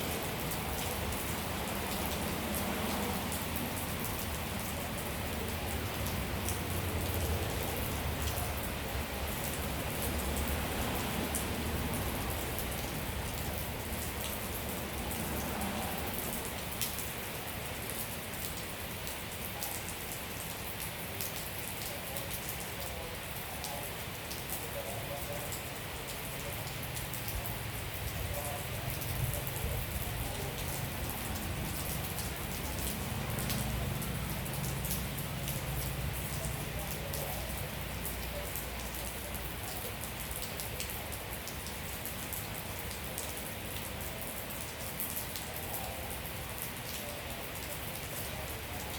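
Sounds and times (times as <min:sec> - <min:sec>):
raindrops ticking on surfaces: 0:00.0 - 0:48.9
rain hissing: 0:26.2 - 0:43.8.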